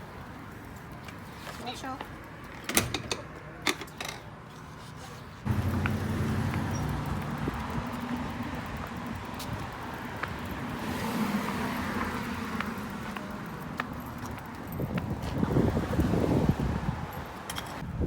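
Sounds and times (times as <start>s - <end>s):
engine running steadily: 5.5s - 9.2s.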